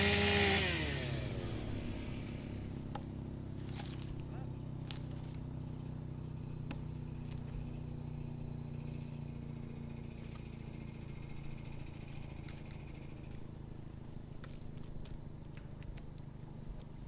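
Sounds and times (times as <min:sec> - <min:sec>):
wood chipper engine humming: 0:00.0 - 0:17.0
faint high rattle: 0:05.0 - 0:13.6.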